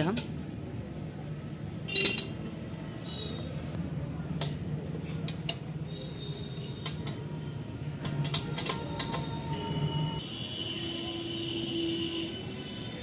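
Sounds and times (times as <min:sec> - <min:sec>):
tools clinking on metal: 0:01.9 - 0:02.4.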